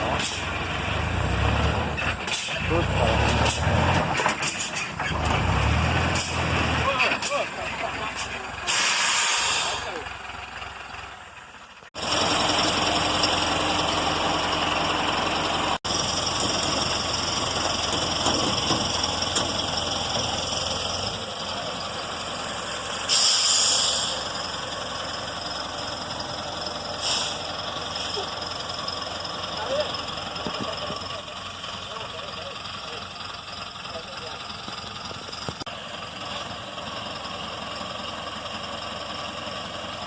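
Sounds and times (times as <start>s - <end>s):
engine running: 0.0s - 40.0s
hiss bursts: 8.7s - 9.9s, 23.1s - 24.2s, 27.0s - 28.2s.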